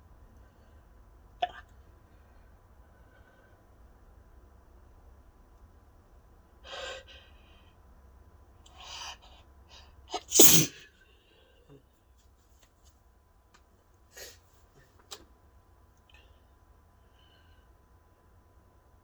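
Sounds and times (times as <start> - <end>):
person sneezing loudly: 10.2 - 10.8.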